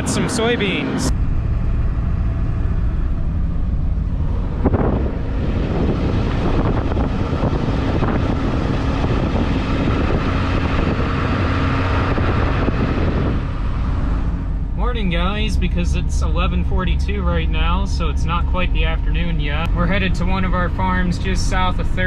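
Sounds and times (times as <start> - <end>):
wind noise: 0.0 - 14.7
vehicle engine rumble: 0.0 - 22.0.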